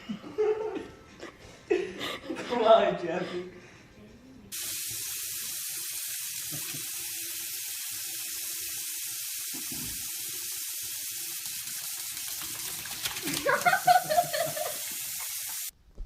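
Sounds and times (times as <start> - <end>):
tap water running: 4.5 - 15.7.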